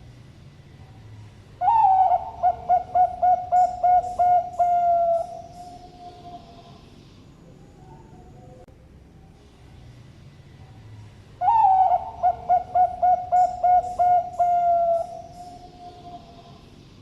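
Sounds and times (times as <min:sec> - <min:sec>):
dove cooing: 0:01.6 - 0:06.8, 0:11.4 - 0:16.6.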